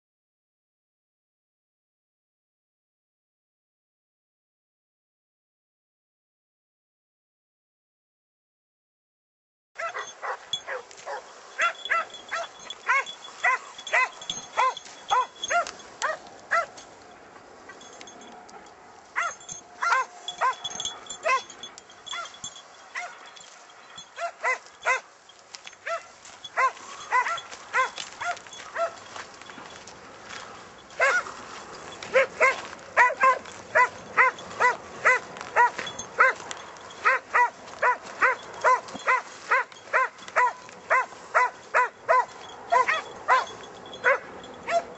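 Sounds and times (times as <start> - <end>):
hounds barking: 9.8 - 16.8, 17.7 - 44.9.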